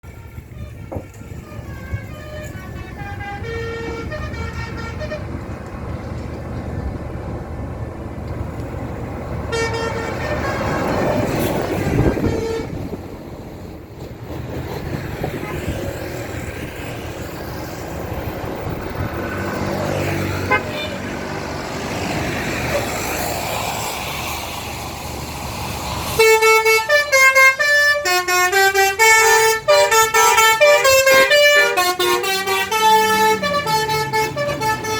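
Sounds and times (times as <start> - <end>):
engine and road noise: 0.0 - 34.9
musical air horn melody: 0.1 - 5.3, 9.5 - 12.8, 26.2 - 34.9.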